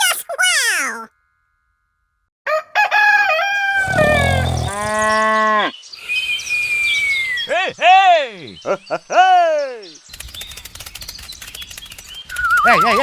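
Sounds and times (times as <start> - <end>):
cow mooing: 3.8 - 5.3.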